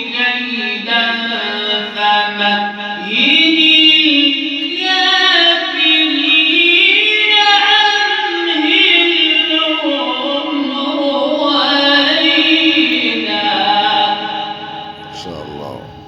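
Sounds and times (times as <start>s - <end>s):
man chanting melodically: 14.8s - 16.0s.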